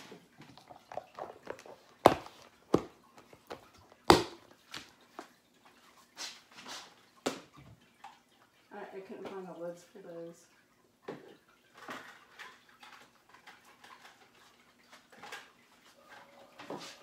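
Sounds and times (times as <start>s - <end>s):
containers knocking and clattering: 0.0s - 4.5s, 11.1s - 17.0s.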